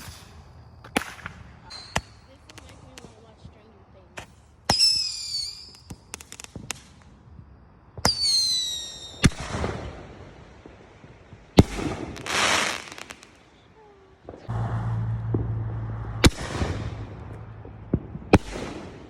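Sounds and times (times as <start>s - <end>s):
small firework pops: 0.0s - 14.5s, 15.3s - 19.0s
firework bangs: 0.0s - 19.0s
firework whistle: 4.7s - 6.2s, 8.0s - 9.5s
hissing crackle: 5.4s - 7.3s, 8.0s - 19.0s.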